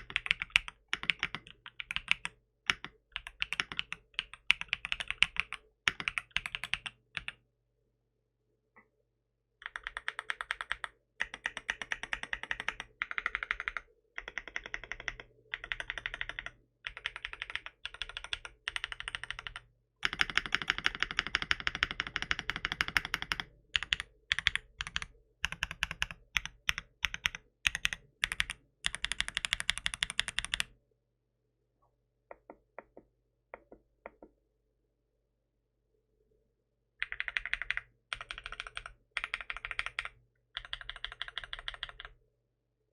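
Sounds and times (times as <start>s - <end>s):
mechanical keyboard typing: 0.0s - 7.4s, 9.6s - 30.7s, 37.0s - 42.2s.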